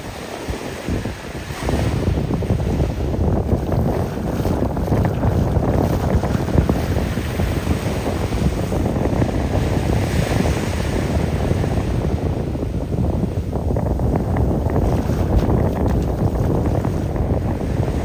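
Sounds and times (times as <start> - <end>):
small waves washing on sand: 0.0 - 18.0
wind buffeting microphone: 0.0 - 18.0.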